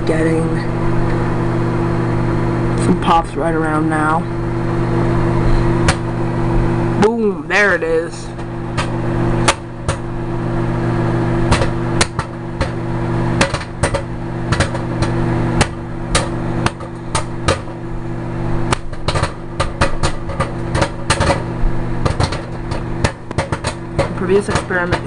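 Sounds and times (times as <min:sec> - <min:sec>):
microwave oven hum: 0:00.0 - 0:25.0
popcorn popping: 0:05.7 - 0:07.3, 0:07.9 - 0:25.0.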